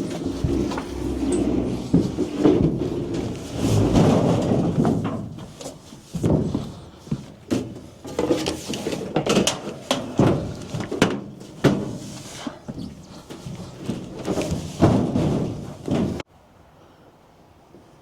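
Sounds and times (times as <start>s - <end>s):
heavy objects knocking and banging: 0.0s - 5.6s.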